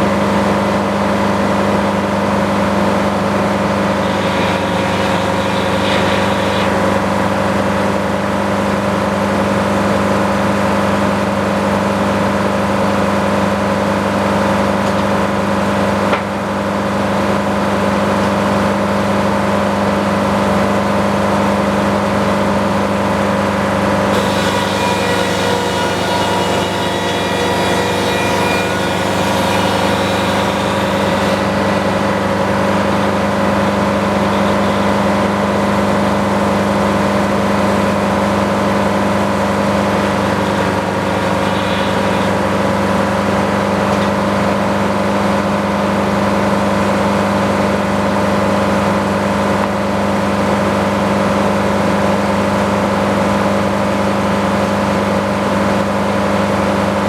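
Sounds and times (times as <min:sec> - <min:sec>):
sawmill engine humming: 0:00.1 - 0:13.5, 0:21.8 - 0:45.4.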